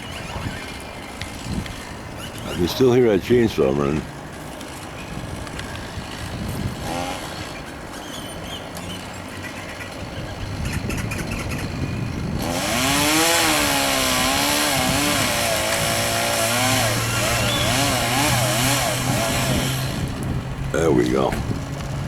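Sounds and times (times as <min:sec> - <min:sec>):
electric chainsaw cutting wood: 0:04.7 - 0:07.7, 0:11.4 - 0:20.4.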